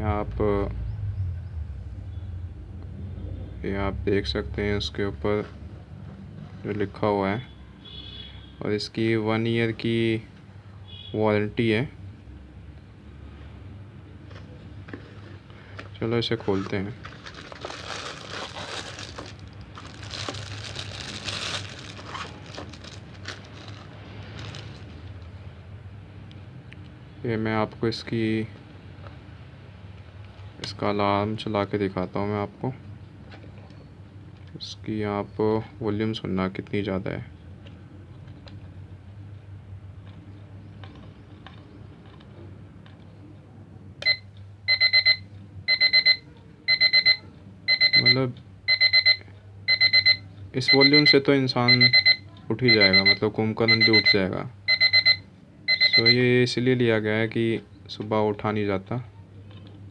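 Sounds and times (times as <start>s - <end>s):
packaging crinkling: 16.4s - 25.2s
alarm clock beeping: 44.1s - 56.2s.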